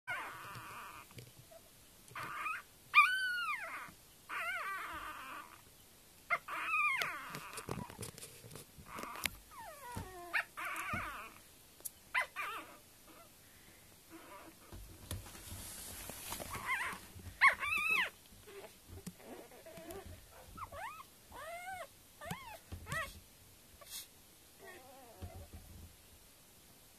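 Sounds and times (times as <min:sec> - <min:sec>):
puppy squeaky cries: 0:00.1 - 0:01.1, 0:02.2 - 0:05.6, 0:06.3 - 0:07.9, 0:09.0 - 0:11.4, 0:12.2 - 0:13.2, 0:16.5 - 0:23.2
puppies snoring: 0:00.1 - 0:05.7, 0:06.3 - 0:11.4, 0:14.1 - 0:23.2, 0:24.6 - 0:25.6.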